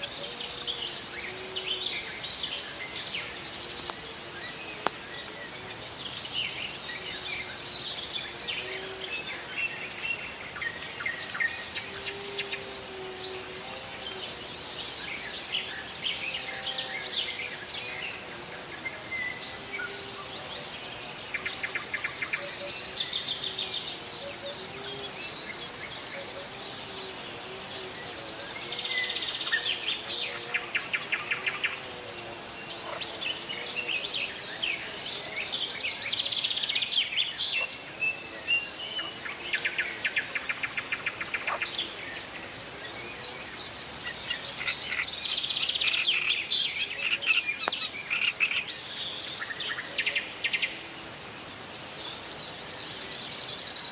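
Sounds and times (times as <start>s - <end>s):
songbirds singing and chirping: 0.0s - 53.9s.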